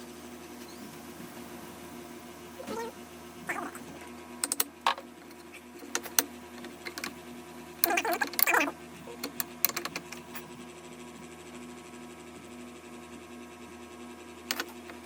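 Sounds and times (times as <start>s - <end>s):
hand tools clicking and tapping: 4.4s - 7.1s, 9.2s - 10.2s
rattling clicks: 9.2s - 10.4s.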